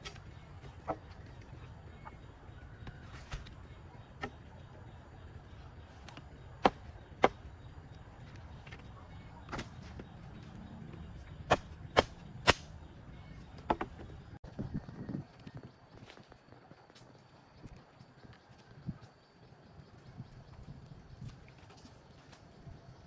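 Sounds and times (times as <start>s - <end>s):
sharp chopping knocks: 3.2s - 3.6s, 6.6s - 7.4s, 11.5s - 12.7s.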